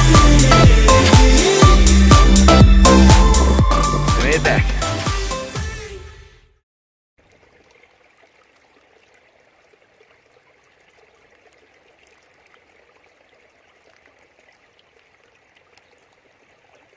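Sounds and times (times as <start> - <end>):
small water splashes: 7.2 - 16.9
stream trickling: 7.2 - 16.9.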